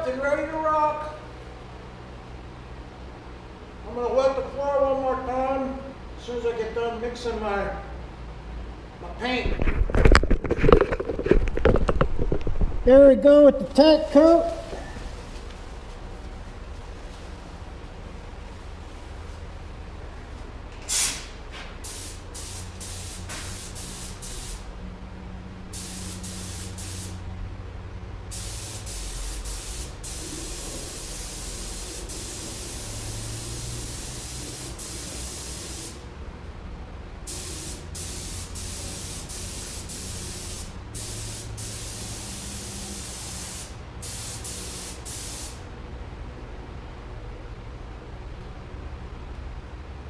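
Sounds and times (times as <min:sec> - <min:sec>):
steady low hum: 0:00.0 - 0:50.0
paint spray gun hissing: 0:20.8 - 0:24.7, 0:25.7 - 0:27.2, 0:28.3 - 0:36.0, 0:37.3 - 0:45.6.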